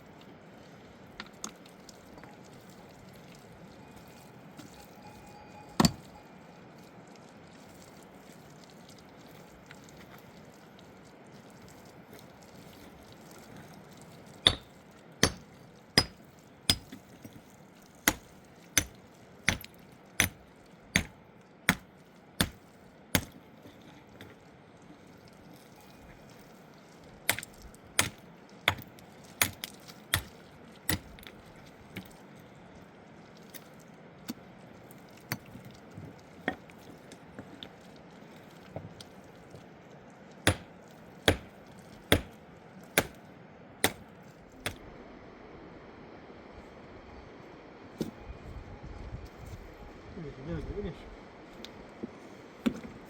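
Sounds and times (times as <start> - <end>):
hand tool striking hard material: 14.4 - 15.4, 16.0 - 17.4, 18.0 - 22.6, 23.2 - 23.4, 27.3 - 30.3, 30.9 - 31.3, 40.4 - 42.4, 43.0 - 43.2, 43.8 - 44.0.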